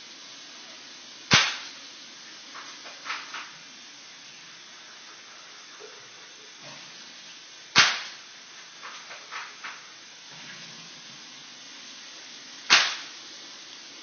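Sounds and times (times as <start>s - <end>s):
airsoft rifle shot snap: 1.3s - 1.8s, 7.7s - 8.2s, 12.7s - 13.1s.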